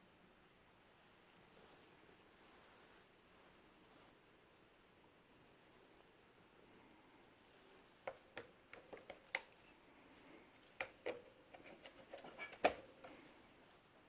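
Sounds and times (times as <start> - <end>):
hard objects clicking and knocking: 8.0 - 9.7, 10.5 - 13.3.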